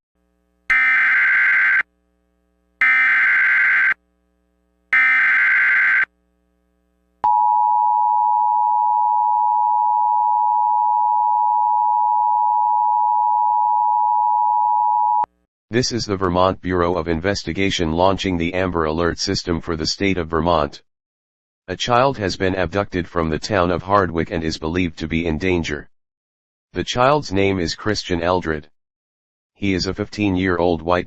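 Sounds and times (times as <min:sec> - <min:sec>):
screeching data bursts: 0:00.7 - 0:01.8, 0:02.8 - 0:04.0, 0:05.0 - 0:06.1.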